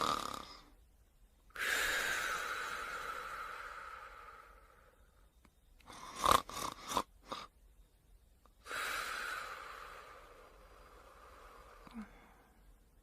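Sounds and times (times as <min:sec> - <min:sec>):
person snoring: 0:00.0 - 0:00.8, 0:01.5 - 0:05.0, 0:05.9 - 0:07.5, 0:08.6 - 0:12.4.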